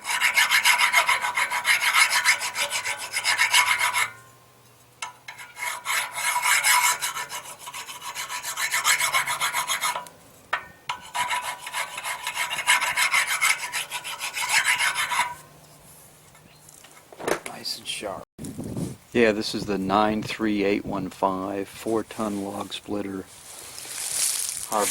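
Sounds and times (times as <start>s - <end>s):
hand file rasping on steel: 0.0s - 4.2s, 5.0s - 10.1s, 10.9s - 15.5s.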